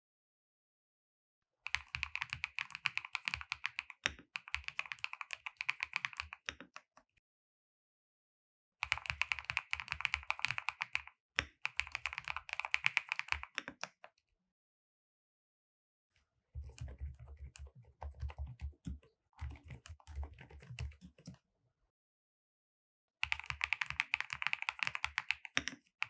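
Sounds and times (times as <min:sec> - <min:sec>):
fast typing on mechanical keyboard: 0:01.7 - 0:06.5, 0:08.8 - 0:11.0, 0:11.7 - 0:13.6, 0:16.6 - 0:21.3, 0:23.2 - 0:25.8.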